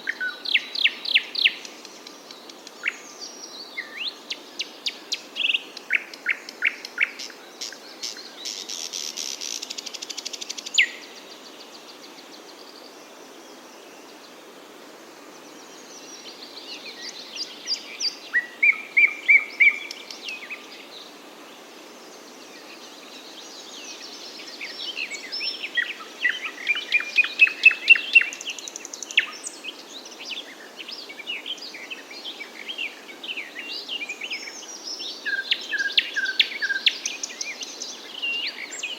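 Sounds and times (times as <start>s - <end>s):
faint background hiss: 0.0s - 38.9s
songbirds chirping and trilling: 0.0s - 38.9s.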